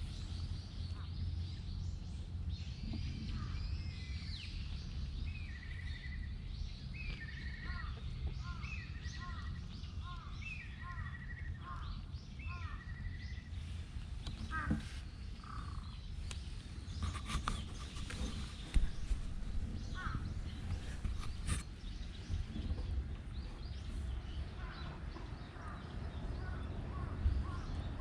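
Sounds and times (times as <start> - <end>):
steady low rumble: 0.0 - 17.0, 17.6 - 28.0
songbird trilling: 14.4 - 22.8.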